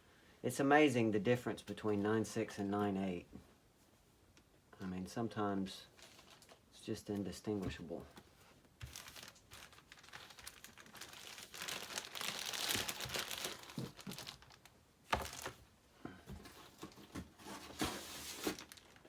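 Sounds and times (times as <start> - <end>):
packing material crinkling: 5.9 - 6.8, 8.4 - 15.7, 16.3 - 19.0.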